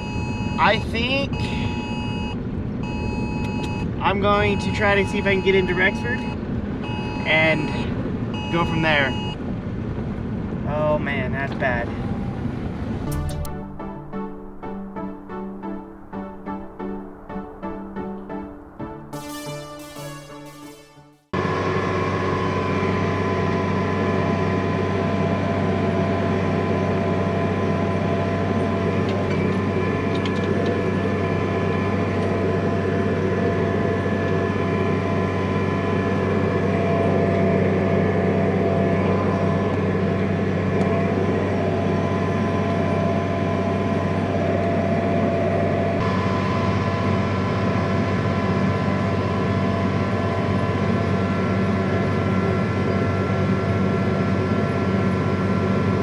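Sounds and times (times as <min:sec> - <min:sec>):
high-pitched hum: 0:13.1 - 0:21.3.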